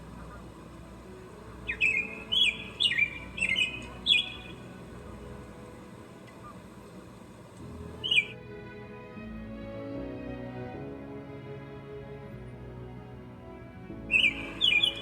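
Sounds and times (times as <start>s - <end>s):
songbird calling: 0.0s - 4.8s, 6.1s - 7.2s, 8.0s - 8.4s, 14.1s - 15.0s
faint steady hum: 0.0s - 15.0s.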